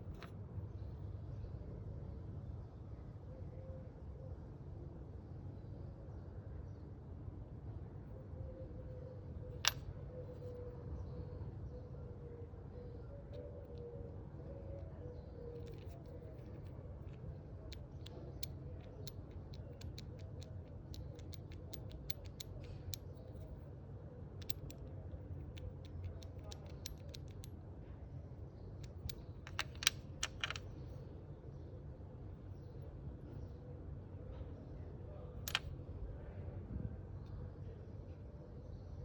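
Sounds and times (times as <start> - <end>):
sharp engine clicks: 17.8 - 23.5, 24.4 - 27.5.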